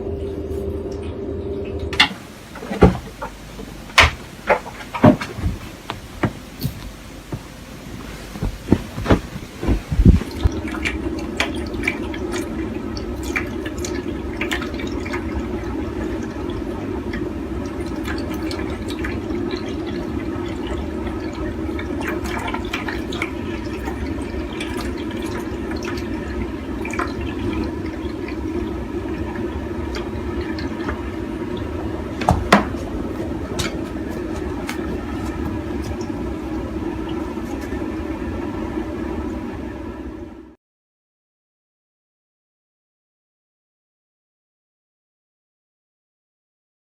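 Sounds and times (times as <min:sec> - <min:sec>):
water splashing into a basin: 0:09.0 - 0:36.2.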